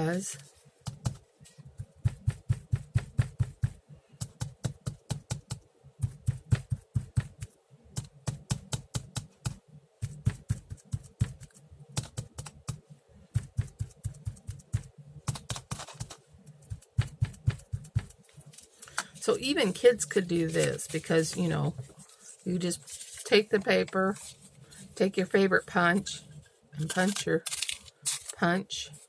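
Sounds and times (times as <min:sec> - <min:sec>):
ink sponge tapping on paper: 0:00.8 - 0:19.1.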